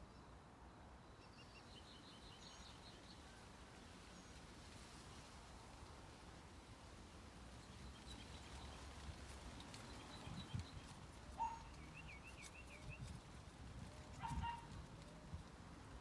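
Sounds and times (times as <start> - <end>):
faint songbirds chirping: 1.1 - 4.4, 7.5 - 13.3.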